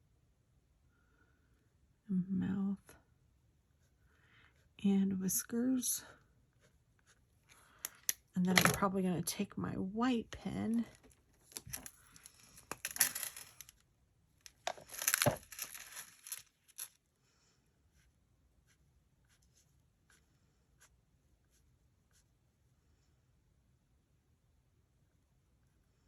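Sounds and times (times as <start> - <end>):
paper rustling: 11.4 - 13.7, 14.5 - 16.9.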